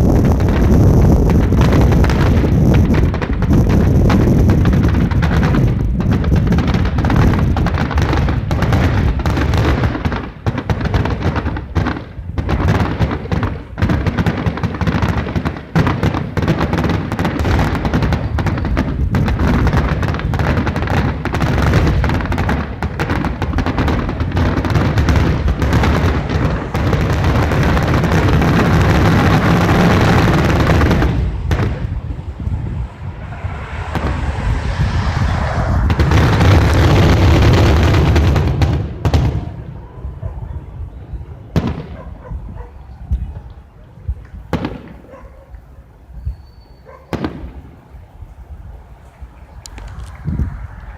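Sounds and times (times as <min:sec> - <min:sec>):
fireworks booming and crackling: 0:00.0 - 0:39.9, 0:40.9 - 0:43.4, 0:44.1 - 0:45.2, 0:47.1 - 0:48.0.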